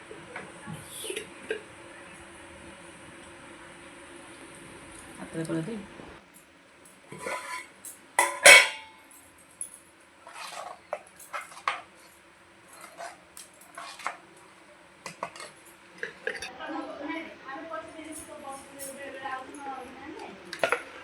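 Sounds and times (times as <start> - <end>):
utensils clinking on metal cookware: 7.1 - 14.2, 15.1 - 16.5, 20.5 - 21.0.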